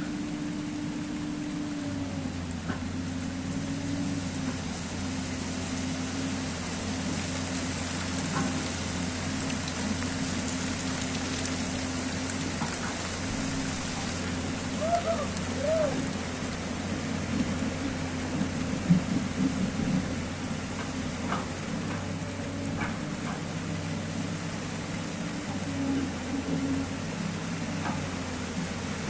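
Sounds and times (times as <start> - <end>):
excavator engine running: 0.0 - 29.0
steady rain falling: 0.0 - 29.0.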